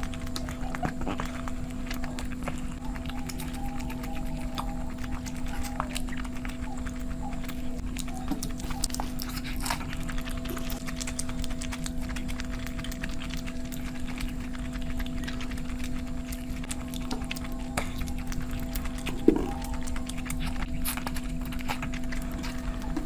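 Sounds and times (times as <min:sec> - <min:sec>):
chewing and mouth clicks: 0:00.0 - 0:23.0
electrical hum: 0:00.0 - 0:23.0.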